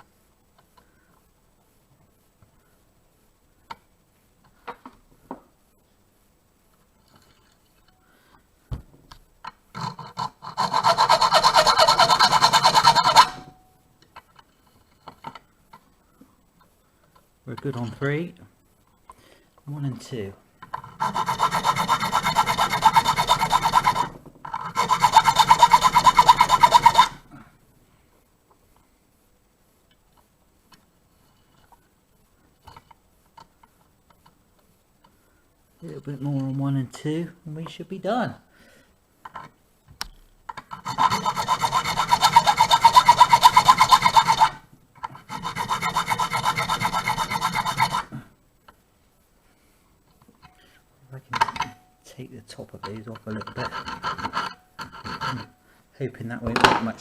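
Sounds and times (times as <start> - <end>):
file rasping on metal key: 9.8 - 13.5, 20.8 - 27.2, 40.7 - 48.2, 52.8 - 55.6.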